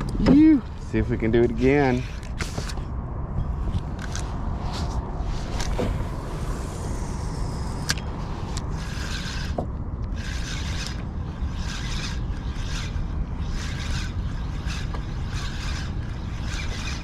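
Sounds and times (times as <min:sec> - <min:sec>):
wind and water rumble: 0:00.0 - 0:17.0
rod and reel rustles: 0:08.2 - 0:17.0.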